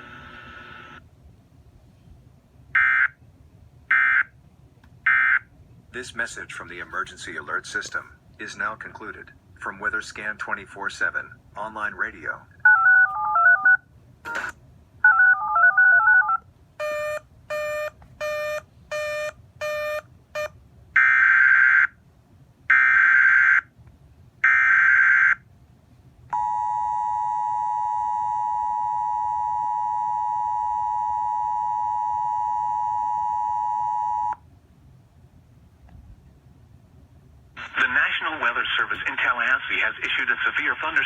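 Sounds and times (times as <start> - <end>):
two-tone attention signal: 26.4 - 34.4.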